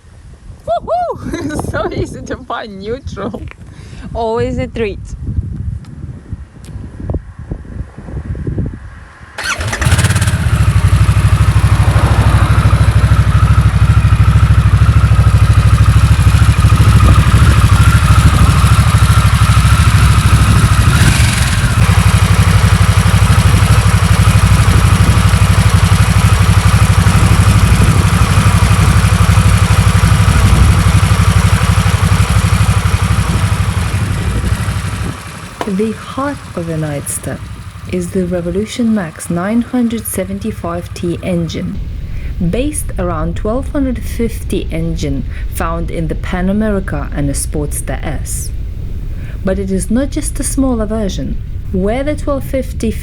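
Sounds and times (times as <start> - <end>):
electric starter cranking: 9.4 - 12.4, 16.6 - 25.5
motorcycle engine idling: 9.4 - 53.0.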